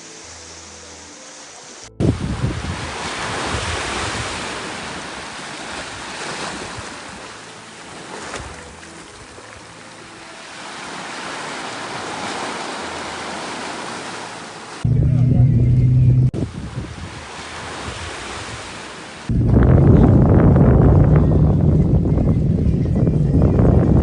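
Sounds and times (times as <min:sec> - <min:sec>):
waves breaking on shore: 0:00.0 - 0:14.9, 0:16.3 - 0:19.6
soft background music: 0:00.0 - 0:16.4, 0:17.0 - 0:24.0
wind buffeting microphone: 0:02.0 - 0:07.1, 0:14.8 - 0:24.0.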